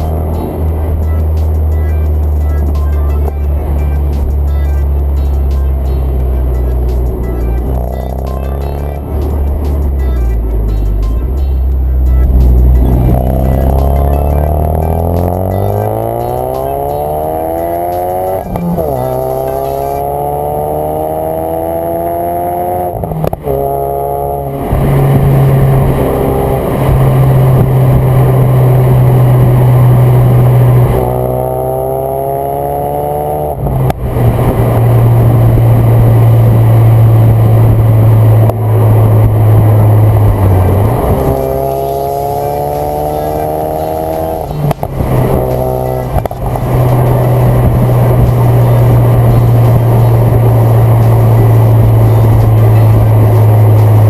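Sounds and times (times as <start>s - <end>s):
car engine accelerating: 0.0s - 54.0s
loud low drone: 3.4s - 54.0s.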